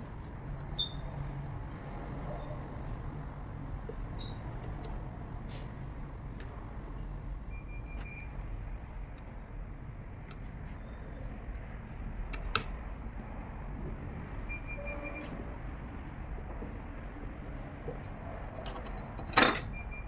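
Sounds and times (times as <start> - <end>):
sharp clicks of hand work: 12.3 - 13.3.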